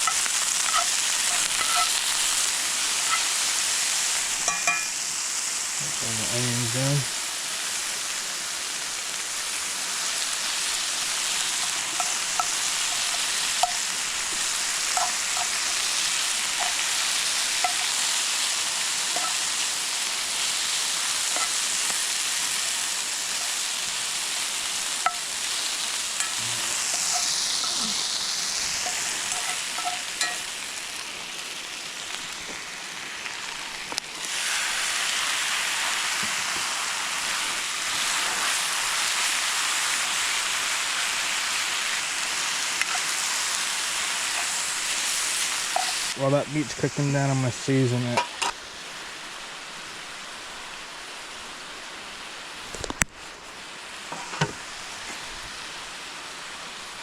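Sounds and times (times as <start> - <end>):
spatula tapping and scraping pan: 0.0 - 2.2, 4.4 - 5.0, 11.8 - 15.9, 16.6 - 16.9, 17.6 - 18.0, 19.1 - 19.5, 25.0 - 25.4, 26.2 - 27.8, 28.8 - 30.5, 42.8 - 43.2, 45.7 - 46.0
vegetables sizzling in oil: 0.0 - 57.0.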